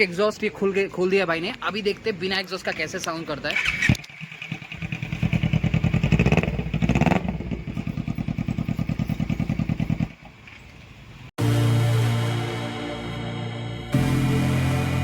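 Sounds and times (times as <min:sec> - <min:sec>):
motorcycle engine loud pulsing: 0:03.6 - 0:10.2.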